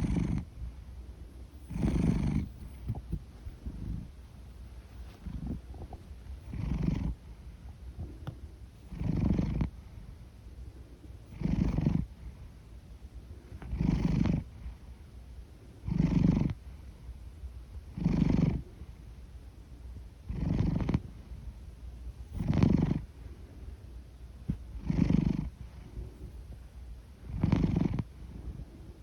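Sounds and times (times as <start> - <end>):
cat snoring: 0.0 - 0.5, 1.6 - 4.1, 5.2 - 7.2, 8.9 - 9.7, 11.3 - 12.1, 13.6 - 14.7, 15.8 - 16.6, 17.9 - 18.7, 20.3 - 21.1, 22.3 - 23.1, 24.8 - 26.3, 27.2 - 28.7
cat purring: 0.0 - 0.7, 1.4 - 9.9, 11.2 - 12.4, 13.4 - 14.9, 15.8 - 16.8, 17.8 - 19.0, 20.2 - 21.6, 22.2 - 23.5, 24.4 - 29.0.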